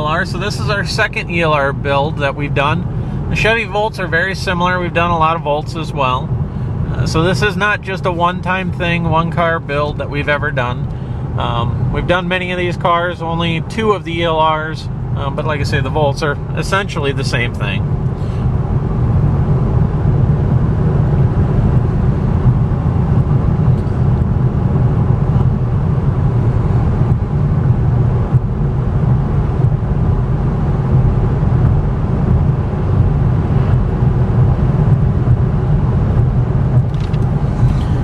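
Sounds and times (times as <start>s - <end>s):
road and tyre rumble in car: 0.0s - 38.0s.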